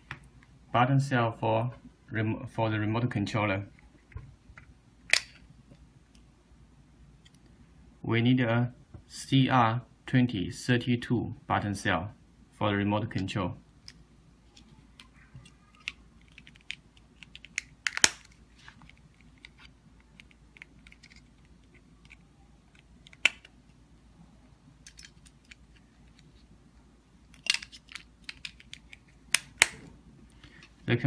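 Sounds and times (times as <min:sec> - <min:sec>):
plastic snaps: 0:15.8 - 0:22.2, 0:27.3 - 0:29.9
small plastic clicks: 0:27.3 - 0:29.8.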